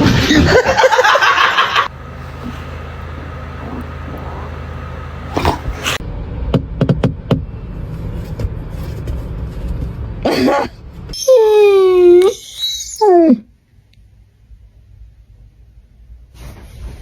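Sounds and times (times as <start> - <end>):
loud noise: 0.0 - 6.0
steady low hum: 0.5 - 6.0.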